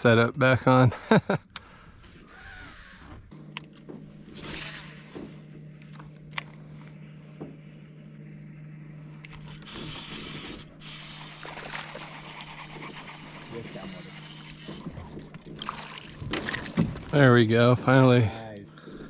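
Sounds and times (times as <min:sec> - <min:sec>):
boat motor humming: 0:00.0 - 0:19.0
fishing gear clicking and rustling: 0:02.2 - 0:07.0, 0:09.2 - 0:19.0.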